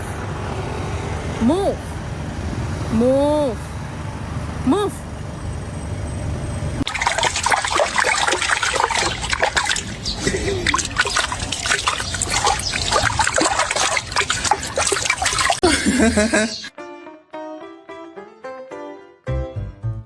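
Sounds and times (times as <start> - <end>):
low water rush: 6.8 - 15.6
water splashing and dripping: 6.8 - 15.6.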